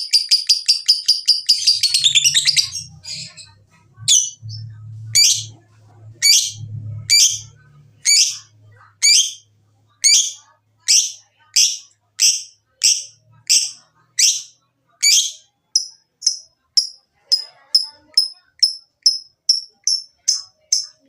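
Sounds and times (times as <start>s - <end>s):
lovebird shrill chirps: 0.1s - 3.5s, 10.1s - 15.4s.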